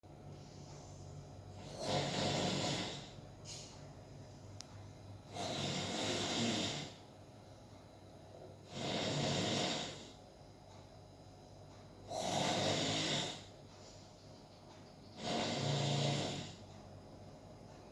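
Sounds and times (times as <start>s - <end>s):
person snoring loudly: 1.5s - 3.2s, 5.3s - 7.0s, 8.6s - 10.2s, 12.1s - 13.5s, 15.2s - 16.6s.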